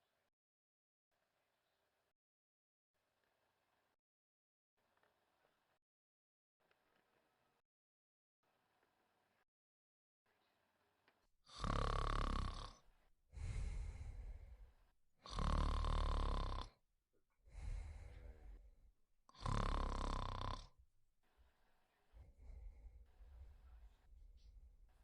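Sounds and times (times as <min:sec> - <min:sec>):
woman snoring: 0:11.5 - 0:12.8, 0:13.4 - 0:14.5, 0:15.2 - 0:16.8, 0:19.3 - 0:20.7
soft breath: 0:13.4 - 0:14.9, 0:17.5 - 0:18.8, 0:21.4 - 0:25.0.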